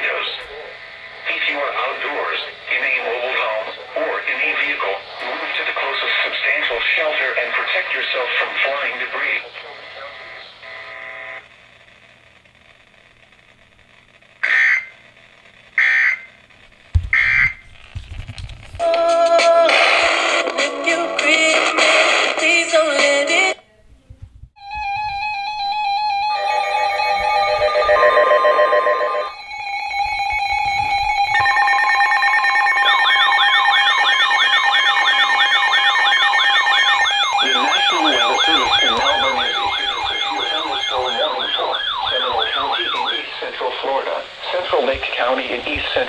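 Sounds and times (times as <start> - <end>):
siren-like sweeps: 24.8 - 43.3
warbling alert tone: 26.3 - 43.2.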